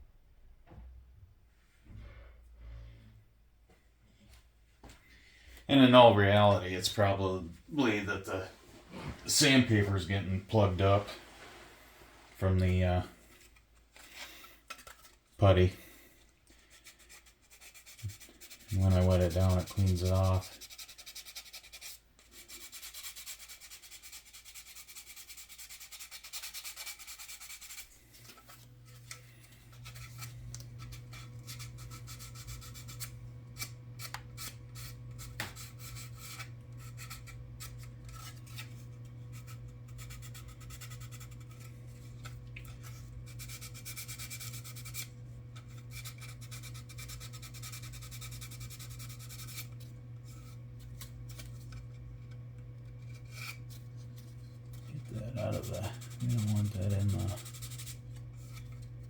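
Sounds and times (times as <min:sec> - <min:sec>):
steady low hum: 0:01.9 - 0:20.8, 0:27.0 - 0:59.0
sandpaper rubbing on plastic: 0:16.5 - 0:51.7, 0:53.0 - 0:58.8.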